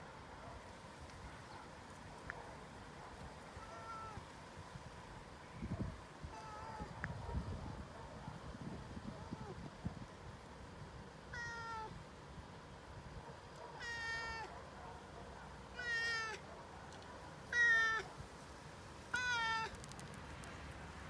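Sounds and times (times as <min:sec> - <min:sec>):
cat meowing: 0:03.6 - 0:04.2, 0:06.3 - 0:06.9, 0:11.3 - 0:11.9, 0:13.8 - 0:14.5, 0:15.8 - 0:16.4, 0:17.5 - 0:18.1, 0:19.1 - 0:19.8.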